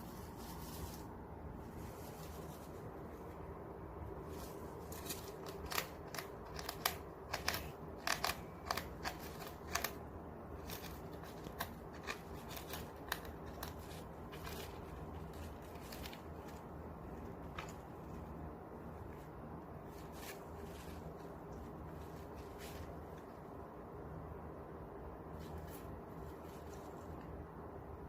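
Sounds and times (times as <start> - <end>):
faint low hum: 0.0 - 28.0
hamster gnawing crackling clicks: 5.3 - 10.0.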